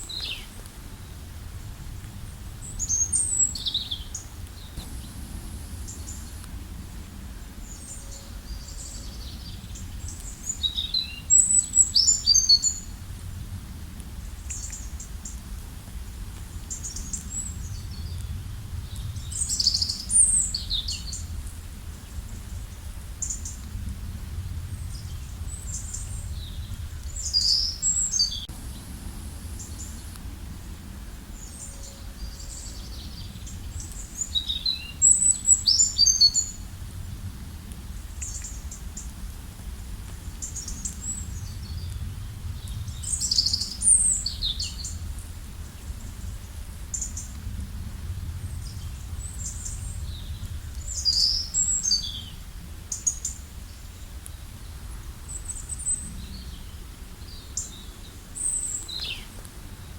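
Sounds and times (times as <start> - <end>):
steady low rumble: 0.8 - 10.6, 12.8 - 35.6, 36.4 - 55.3
songbirds chirping and trilling: 2.6 - 12.9, 24.8 - 36.6, 48.5 - 59.9.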